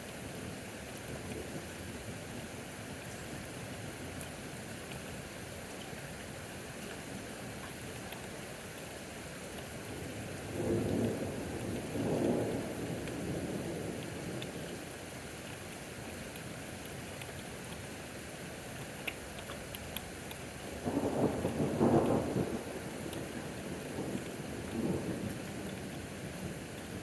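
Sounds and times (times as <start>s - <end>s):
steady rain: 0.0s - 27.0s
thunder rumbling: 10.5s - 14.4s, 20.8s - 27.0s.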